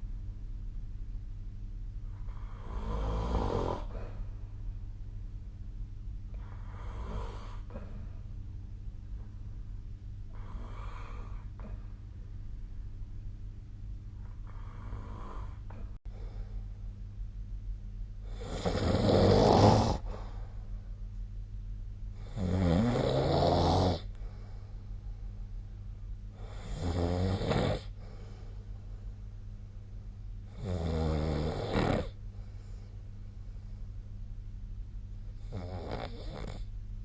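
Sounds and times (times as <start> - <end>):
steady low hum: 0.0 - 37.0
person snoring: 2.2 - 4.2, 6.3 - 8.0, 10.3 - 11.8, 14.4 - 16.0, 18.2 - 20.4, 22.2 - 24.1, 26.4 - 28.0, 30.5 - 32.2.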